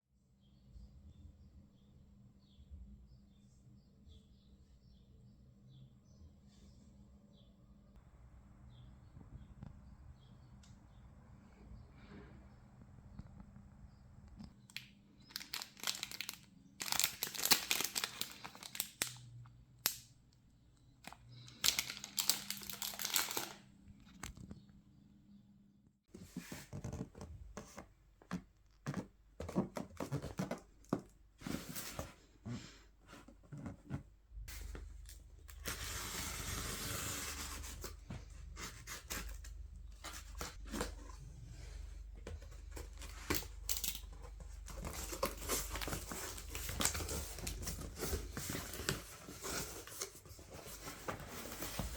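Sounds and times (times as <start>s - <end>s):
packaging crinkling and tearing: 14.8s - 20.0s, 21.1s - 23.6s.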